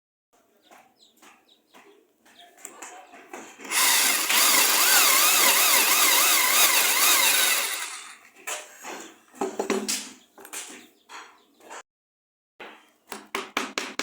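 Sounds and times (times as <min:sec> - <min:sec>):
router spindle cutting wood: 0:03.7 - 0:08.2.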